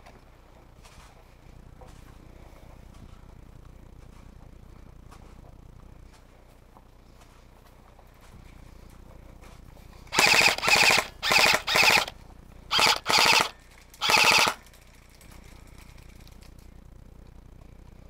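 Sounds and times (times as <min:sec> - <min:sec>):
airsoft gun full-auto bursts: 0:10.1 - 0:14.7.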